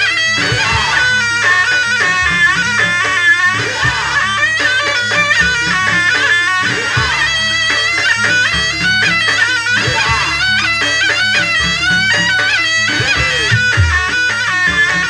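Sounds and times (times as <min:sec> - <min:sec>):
hand-drum strokes: 0:00.0 - 0:07.7, 0:08.3 - 0:15.0
shrill reed shawm melody: 0:00.0 - 0:15.0
gong drone: 0:13.1 - 0:14.3.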